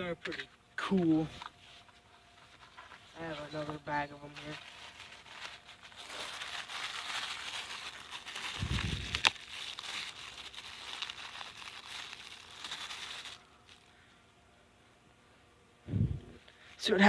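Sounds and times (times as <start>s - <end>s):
plastic bag crinkling: 2.5s - 14.0s.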